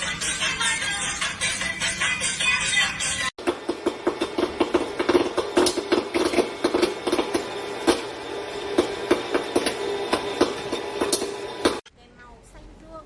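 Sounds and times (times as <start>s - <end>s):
sharp clicks and knocks: 3.4s - 8.1s, 8.7s - 11.8s.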